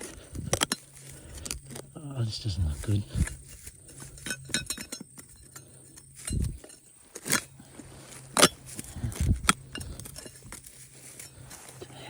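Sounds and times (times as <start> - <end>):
pick striking stony ground: 2.6 - 11.7.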